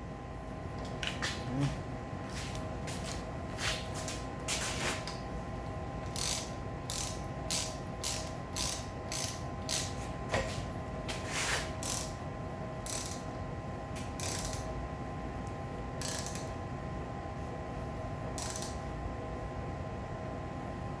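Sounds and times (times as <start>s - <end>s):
ratchet wrench clicking: 6.0s - 9.9s, 11.8s - 12.2s, 12.8s - 13.3s, 14.2s - 14.7s, 16.0s - 16.5s, 18.4s - 18.8s.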